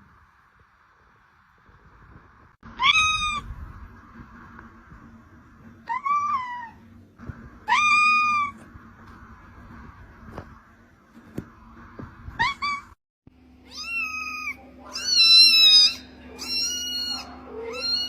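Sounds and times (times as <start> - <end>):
kitten meowing: 2.7 - 3.5, 5.9 - 6.8, 7.6 - 8.6, 12.4 - 13.0, 13.7 - 18.0.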